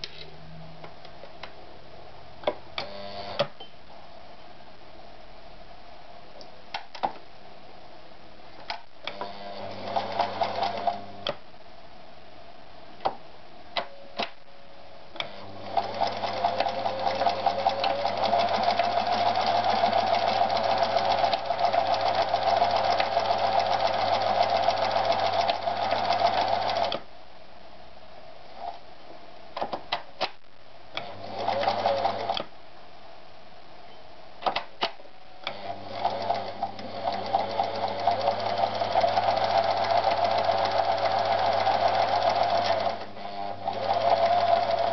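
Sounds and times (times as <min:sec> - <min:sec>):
sewing machine stitching: 0:09.1 - 0:11.0, 0:15.2 - 0:27.0, 0:31.0 - 0:32.4, 0:35.5 - 0:44.9.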